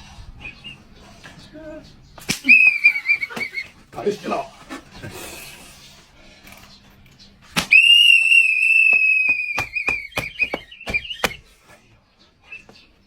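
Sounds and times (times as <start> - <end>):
shrill whistle blast: 2.4 - 3.7, 7.7 - 11.4
sharp smacks or knocks: 7.5 - 7.8, 8.9 - 11.5.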